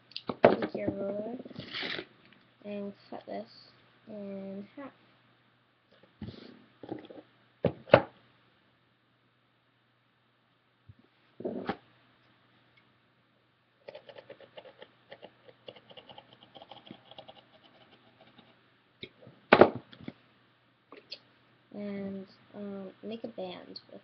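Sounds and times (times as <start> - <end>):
thump: 19.5 - 19.9.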